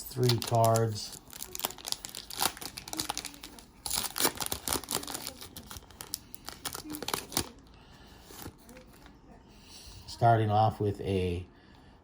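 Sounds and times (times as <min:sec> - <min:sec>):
wrapper tearing and crinkling: 0:00.1 - 0:07.6.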